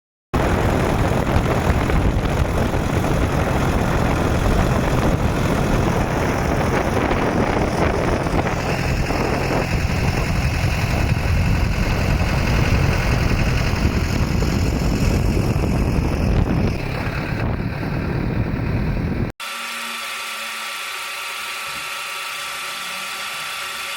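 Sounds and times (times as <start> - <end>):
wood chipper: 0.4 - 18.2, 19.4 - 23.9
tractor engine running: 0.4 - 19.3.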